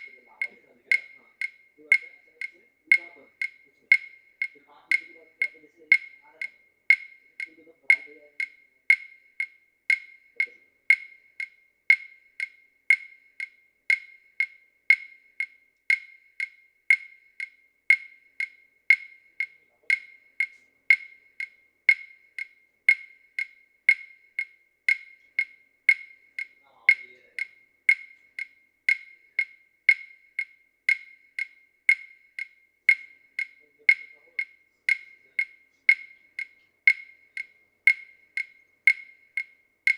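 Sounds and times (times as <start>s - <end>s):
steady rhythmic clicking: 0.0s - 39.9s.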